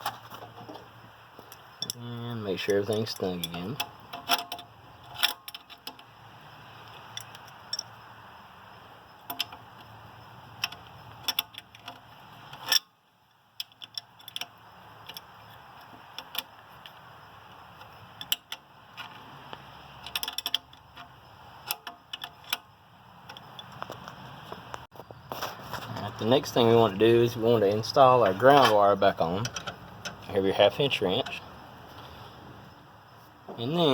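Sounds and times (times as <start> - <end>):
wrench clicking on metal bolts: 1.5 - 6.1, 6.9 - 8.0, 9.2 - 19.1, 19.9 - 24.2, 27.8 - 31.6.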